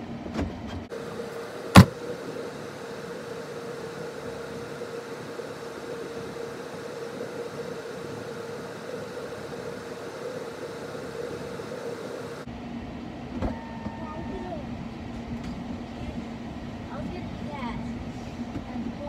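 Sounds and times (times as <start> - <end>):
car engine idling: 0.9 - 19.0.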